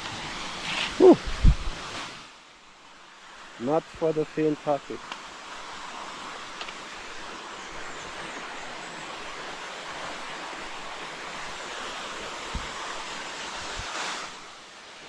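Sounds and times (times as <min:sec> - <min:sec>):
waterfall rushing: 0:00.0 - 0:02.4, 0:03.0 - 0:15.0.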